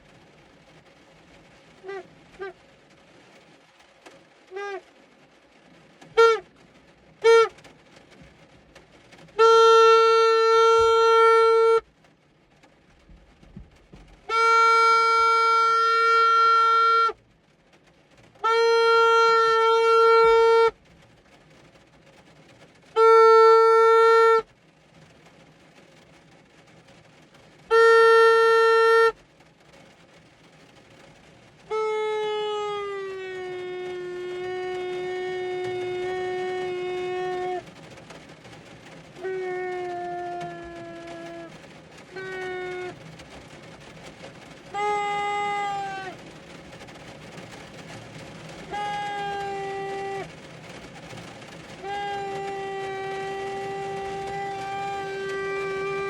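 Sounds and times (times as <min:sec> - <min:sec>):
hand horn honking: 0:06.1 - 0:06.5, 0:07.2 - 0:07.6, 0:09.4 - 0:11.8, 0:14.2 - 0:17.2, 0:18.4 - 0:20.8, 0:23.0 - 0:24.5, 0:27.7 - 0:29.2, 0:31.7 - 0:37.7, 0:39.2 - 0:41.5, 0:42.1 - 0:43.0, 0:44.7 - 0:46.2, 0:48.6 - 0:50.3, 0:51.7 - 0:56.0.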